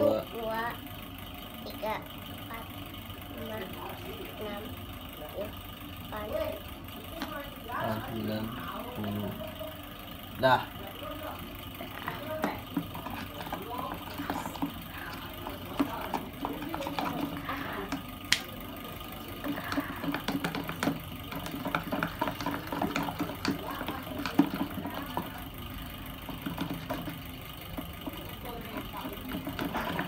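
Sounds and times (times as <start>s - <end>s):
spoon stirring slime: 11.7s - 30.0s.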